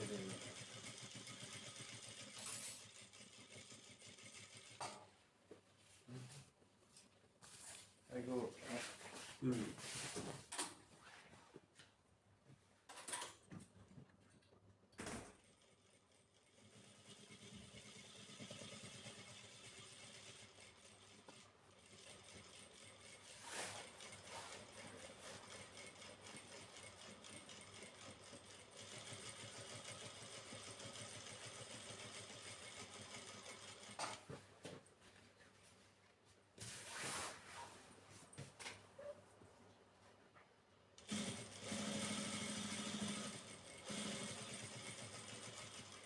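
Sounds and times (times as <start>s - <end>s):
sewing machine stitching: 0.0s - 5.0s, 15.1s - 34.3s, 41.0s - 46.0s.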